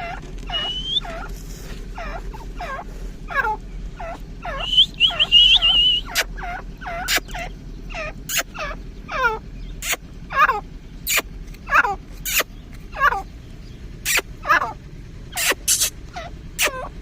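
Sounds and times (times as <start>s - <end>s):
francolins calling: 0.0s - 17.0s
wavering high whistle: 0.6s - 1.0s, 4.6s - 6.2s.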